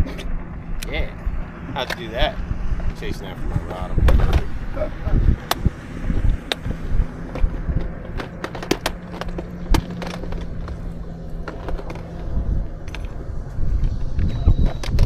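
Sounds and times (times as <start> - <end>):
low rumble: 0.0 - 15.0
sharp clicks and knocks: 5.4 - 13.2.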